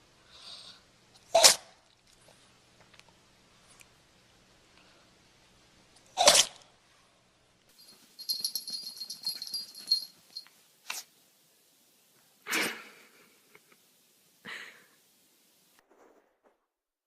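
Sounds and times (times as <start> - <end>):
puppy sneezing: 1.3 - 1.8, 6.2 - 6.6, 10.8 - 11.1, 12.5 - 12.9
metallic jingling: 7.7 - 10.5.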